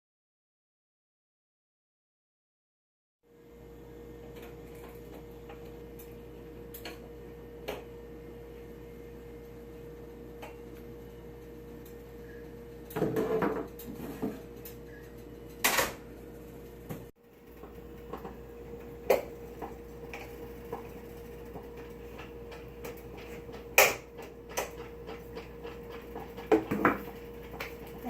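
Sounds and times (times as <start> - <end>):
steady hum: 17.2 - 28.0
clatter of objects: 17.4 - 28.0
hard objects clicking and knocking: 17.4 - 28.0.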